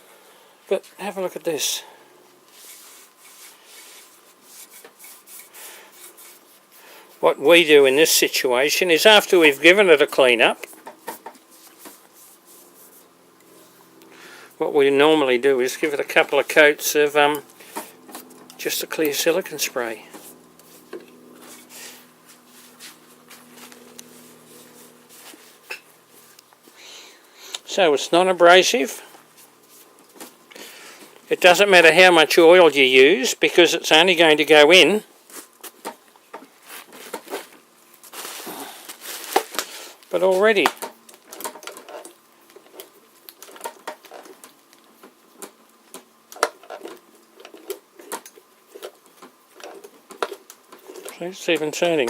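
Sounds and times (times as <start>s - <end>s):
low steady hum: 0.0s - 52.0s
soft handling rubs and clicks: 2.4s - 7.3s, 9.1s - 14.1s, 15.8s - 26.8s, 29.1s - 31.3s.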